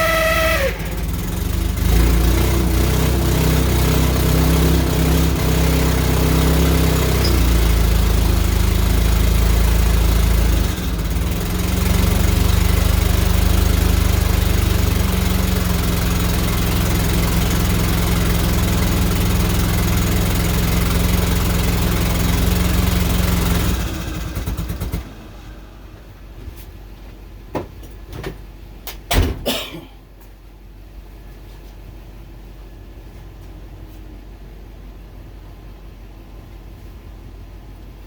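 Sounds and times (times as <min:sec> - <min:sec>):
car engine running and stalling: 0:00.0 - 0:26.2.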